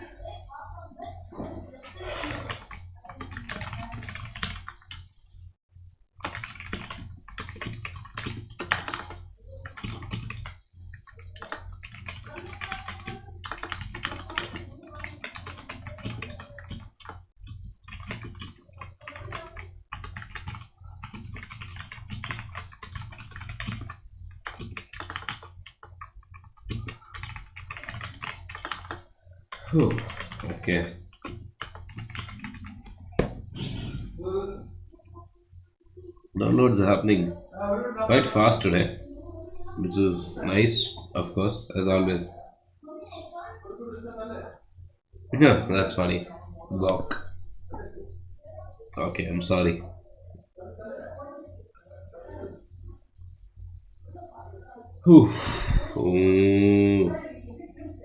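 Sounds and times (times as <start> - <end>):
low steady hum: 0.0 - 58.0
fast typing on keyboard: 1.6 - 5.2, 6.2 - 33.5.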